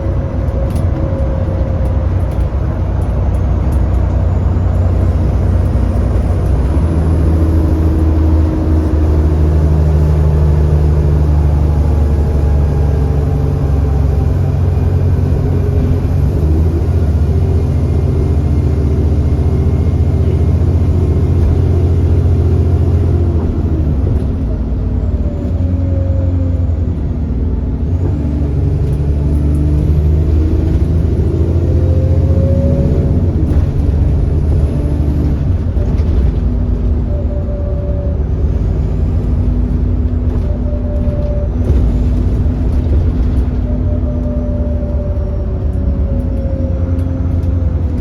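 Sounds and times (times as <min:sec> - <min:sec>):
bus diesel engine running: 0:00.0 - 0:48.0.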